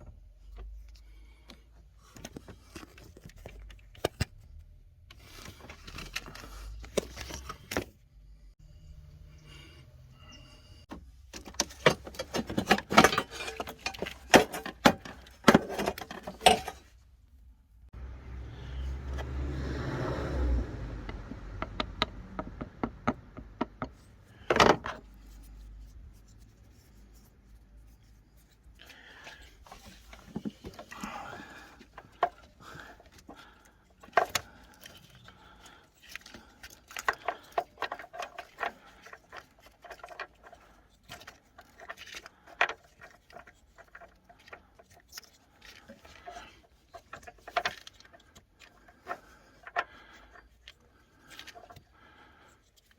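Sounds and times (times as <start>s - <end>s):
metal parts clinking: 11.3s - 16.9s.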